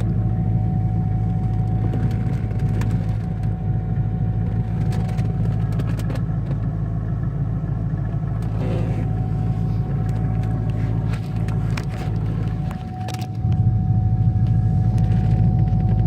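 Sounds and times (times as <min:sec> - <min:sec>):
car engine rumble: 0:00.0 - 0:16.0
thin whine: 0:08.4 - 0:16.0.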